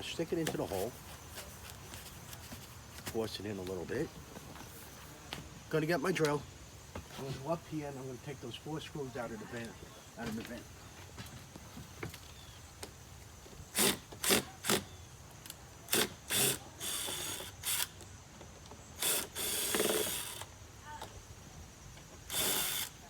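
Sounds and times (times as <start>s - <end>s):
cordless drill bursts: 13.7s - 15.0s, 15.9s - 18.0s, 19.0s - 20.5s, 22.2s - 23.0s.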